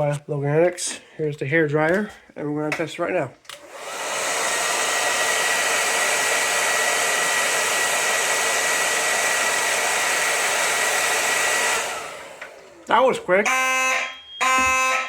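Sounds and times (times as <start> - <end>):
hair dryer running: 3.5 - 13.2.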